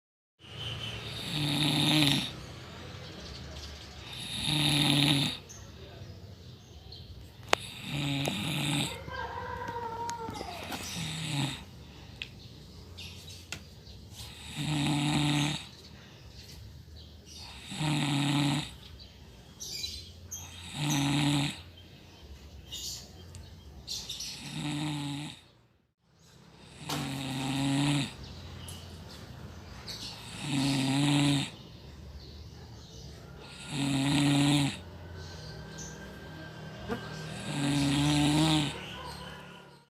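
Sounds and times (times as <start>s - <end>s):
person snoring: 1.0s - 2.5s, 4.0s - 5.5s, 7.5s - 12.2s, 14.2s - 15.8s, 17.3s - 18.8s, 20.4s - 21.7s, 24.1s - 25.5s, 26.6s - 28.3s, 29.9s - 31.6s, 33.4s - 39.0s.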